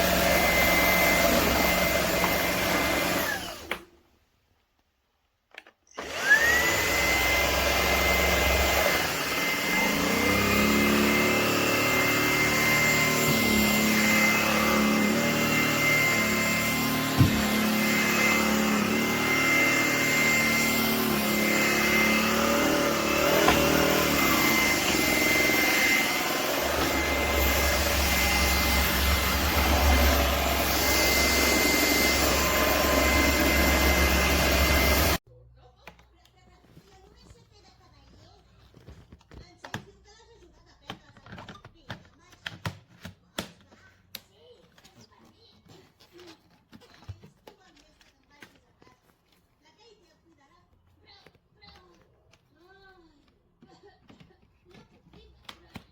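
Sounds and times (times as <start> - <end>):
vacuum cleaner motor whine: 0.0 - 3.8, 6.0 - 35.2.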